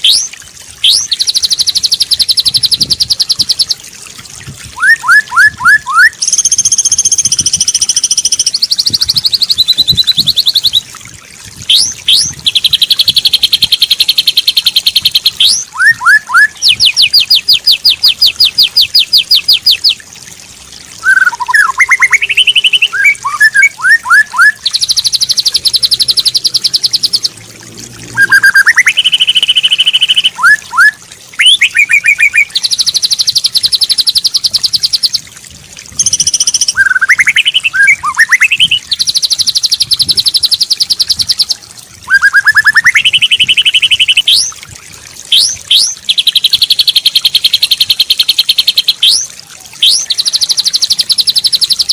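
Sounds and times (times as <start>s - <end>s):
songbird singing trills and whistles: 0.0s - 3.8s, 4.8s - 10.9s, 11.7s - 20.0s, 21.0s - 27.4s, 28.1s - 35.2s, 36.0s - 44.6s, 45.3s - 51.9s.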